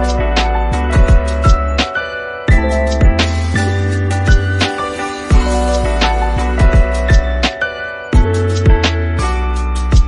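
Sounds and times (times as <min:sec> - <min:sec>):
deep bass: 0:00.0 - 0:01.8, 0:02.5 - 0:04.7, 0:05.3 - 0:07.5, 0:08.2 - 0:10.0
background music with beat: 0:00.0 - 0:10.0
kick drum hits: 0:02.5 - 0:03.2, 0:06.6 - 0:07.3, 0:08.2 - 0:08.8.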